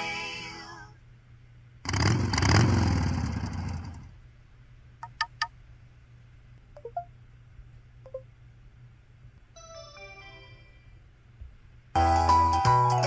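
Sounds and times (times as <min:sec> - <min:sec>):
faint electronic chirp: 0:06.8 - 0:07.1, 0:08.1 - 0:08.3.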